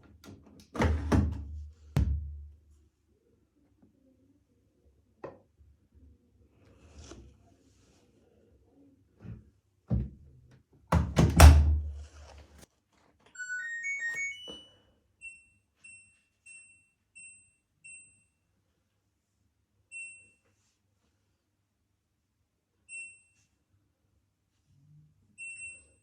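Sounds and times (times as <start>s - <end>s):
washing machine thumps: 0.8s - 2.5s, 10.9s - 11.9s
rising electronic tone melody: 13.4s - 14.8s
short high beeps: 13.4s - 14.8s.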